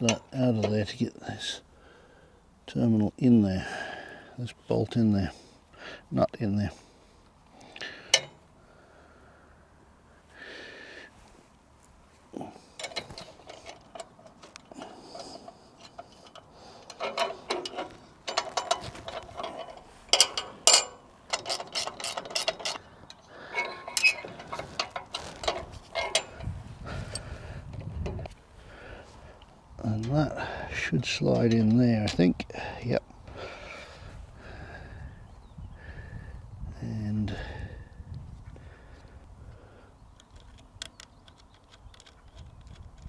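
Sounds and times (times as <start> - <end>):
metal clicks of hand tools: 7.6 - 8.4, 12.8 - 26.5, 31.3 - 32.5, 40.2 - 43.0.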